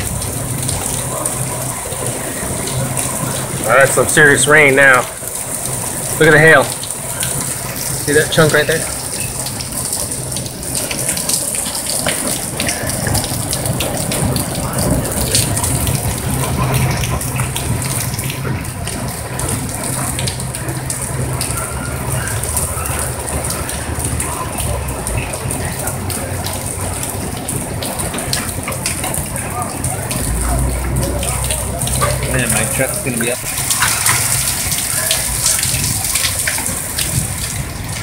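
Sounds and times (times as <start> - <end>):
heavy rain hissing: 0.0 - 38.0
hailstones clattering: 31.9 - 38.0.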